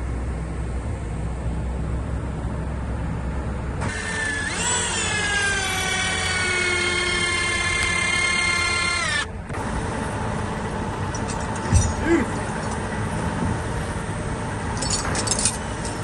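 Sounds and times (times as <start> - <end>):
low engine rumble: 0.0 - 16.0
power tool motor whine: 3.8 - 9.3.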